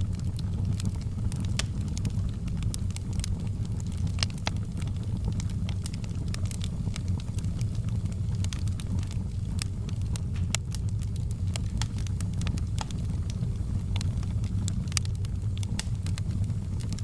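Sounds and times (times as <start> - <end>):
low rumble of flames: 0.0 - 17.0
wood fire crackling and popping: 0.0 - 17.0.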